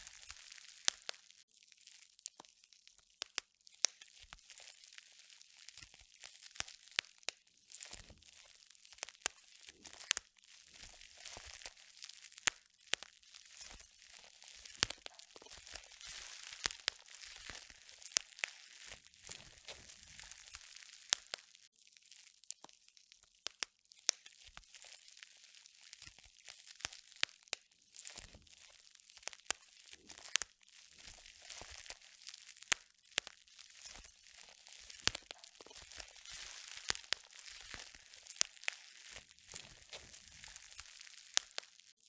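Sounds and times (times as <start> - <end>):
crunching and crinkling: 0.0 - 21.8, 22.4 - 42.0
sharp clicks and crackles: 12.4 - 21.5, 26.9 - 41.9.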